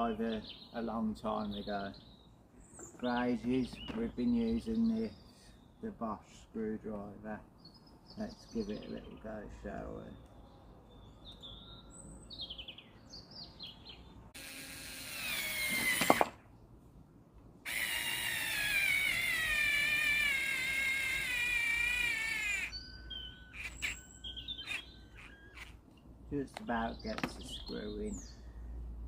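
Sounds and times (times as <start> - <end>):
birds chirping: 0.0 - 14.4, 18.5 - 29.0
electric screwdriver driving screw: 14.4 - 16.4, 17.7 - 22.7.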